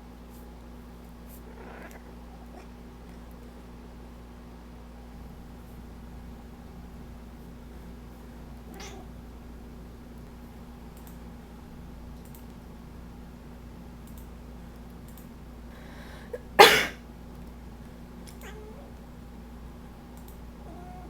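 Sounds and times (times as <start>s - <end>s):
cat meowing faintly: 8.7s - 9.2s, 18.3s - 19.0s, 20.6s - 21.0s
person sneezing: 16.3s - 17.0s.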